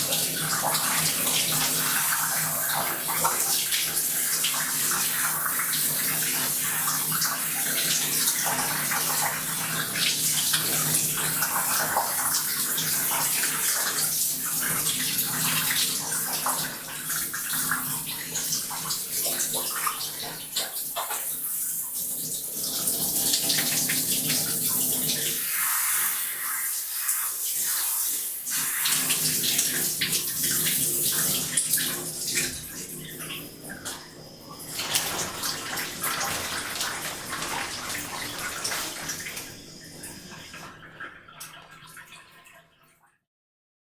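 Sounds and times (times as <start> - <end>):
shower water splashing in bathtub: 0.0 - 43.1.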